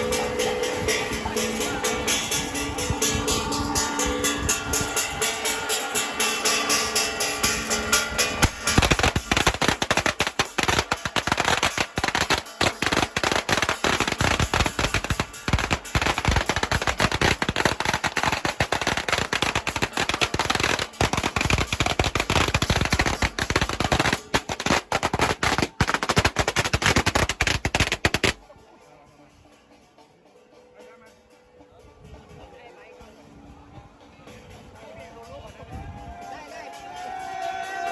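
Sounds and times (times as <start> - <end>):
firecrackers crackling: 6.5 - 28.6.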